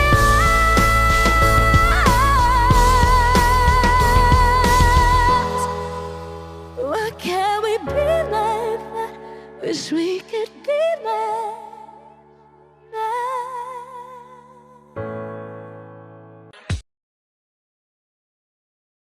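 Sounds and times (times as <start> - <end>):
piano chords: 0.0 - 16.5
woman singing wordless notes: 6.8 - 12.2, 12.8 - 14.9.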